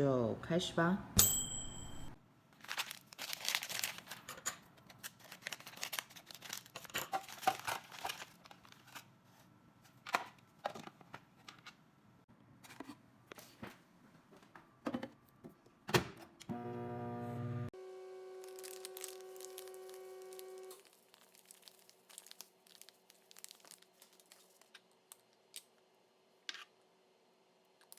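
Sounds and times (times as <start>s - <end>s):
food packaging crinkling: 2.6s - 9.2s, 18.4s - 25.9s
microwave oven hum: 16.4s - 20.8s.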